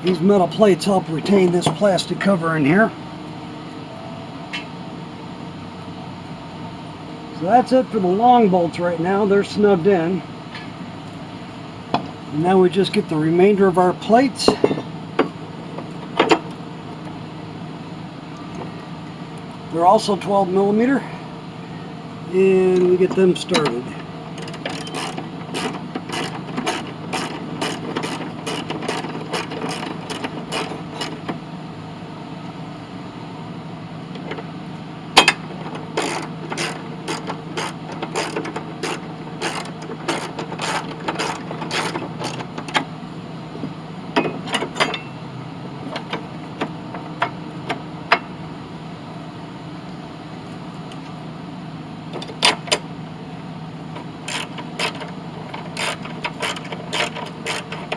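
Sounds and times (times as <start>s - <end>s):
steady low hum: 0.0s - 57.9s.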